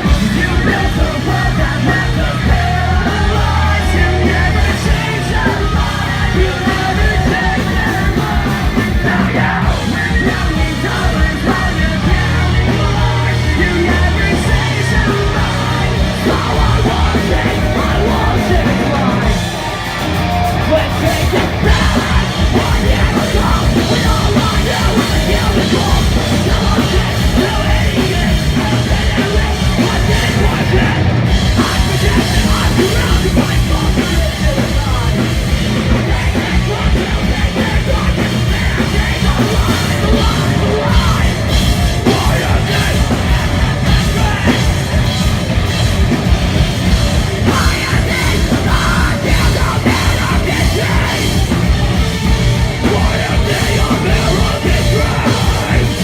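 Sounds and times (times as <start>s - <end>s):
punk rock band playing: 0.0s - 56.0s.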